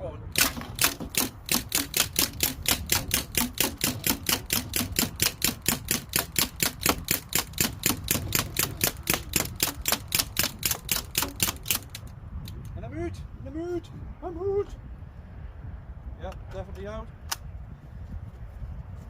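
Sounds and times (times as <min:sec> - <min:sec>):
bb gun firing full-auto: 0:00.4 - 0:12.0.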